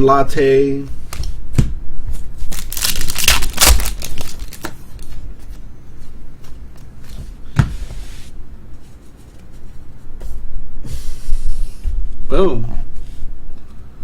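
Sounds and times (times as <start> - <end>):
wrapper tearing and crinkling: 2.4 - 4.8
cards being handled: 2.4 - 5.2.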